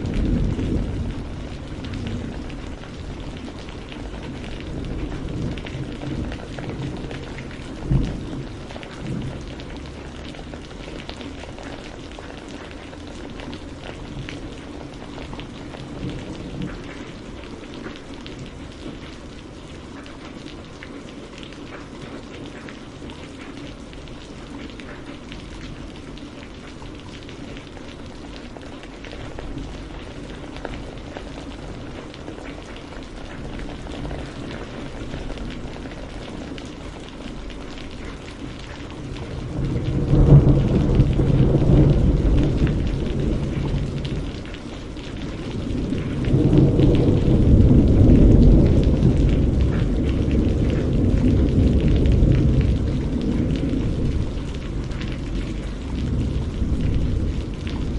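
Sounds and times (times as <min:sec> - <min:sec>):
thunder rolling: 0:00.0 - 0:10.6, 0:38.8 - 0:57.9
rain falling: 0:00.0 - 0:57.9.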